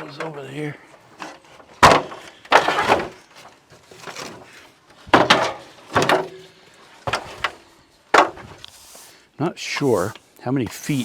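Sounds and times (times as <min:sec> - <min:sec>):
ladder clattering: 0:01.0 - 0:08.6
ladder knocking: 0:01.2 - 0:03.2, 0:05.1 - 0:06.4.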